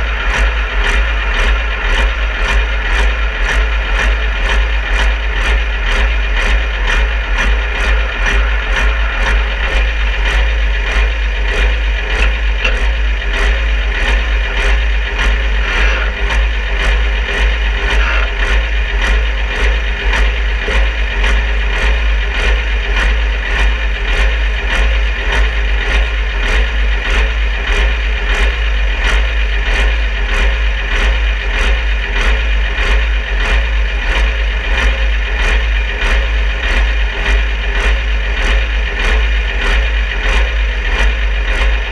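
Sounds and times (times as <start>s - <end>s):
tractor engine rumbling: 0.0s - 24.5s.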